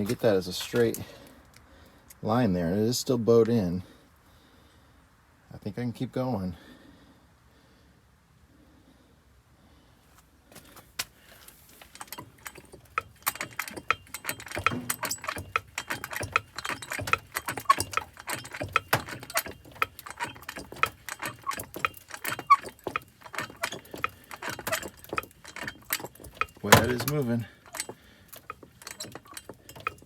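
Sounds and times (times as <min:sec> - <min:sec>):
hydraulic ram pump clicking: 0:11.8 - 0:30.0.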